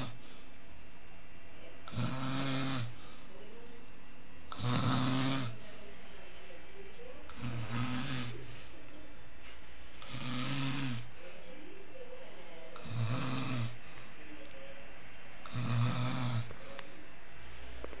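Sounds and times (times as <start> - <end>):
person snoring: 1.9 - 3.2, 4.5 - 5.7, 7.3 - 8.5, 10.0 - 11.1, 12.8 - 13.8, 15.4 - 16.8.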